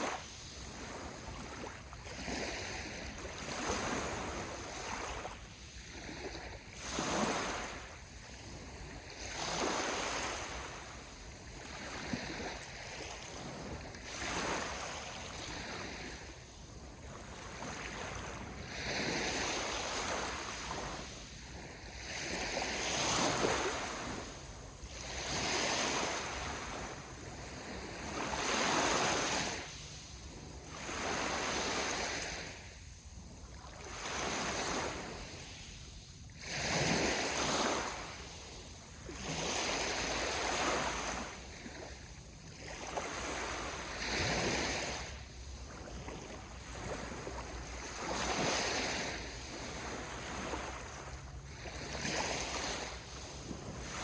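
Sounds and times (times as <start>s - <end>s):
sea waves washing ashore: 0.0s - 54.0s.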